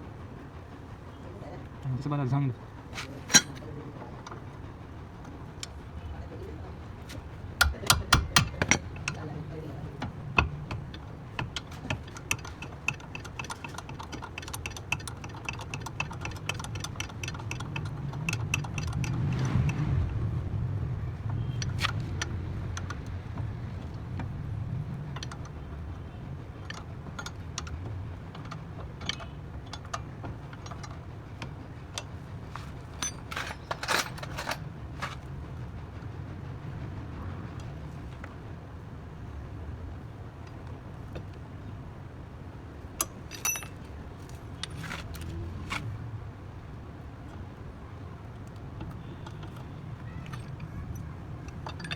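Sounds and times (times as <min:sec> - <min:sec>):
metal tools clinking and knocking: 0:03.0 - 0:04.4, 0:07.1 - 0:19.8, 0:26.5 - 0:35.3, 0:43.0 - 0:45.9, 0:48.5 - 0:51.9
fast metallic clicks: 0:07.1 - 0:20.2, 0:21.3 - 0:35.3.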